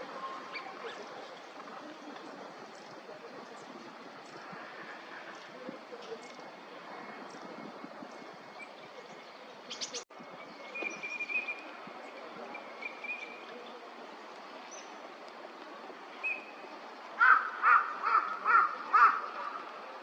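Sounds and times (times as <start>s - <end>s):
crow cawing: 17.2s - 19.6s.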